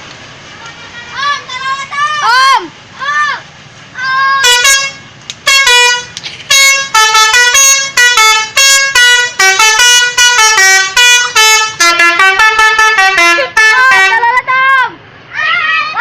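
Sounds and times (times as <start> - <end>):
multi-tone musical air horn: 4.4 - 14.3.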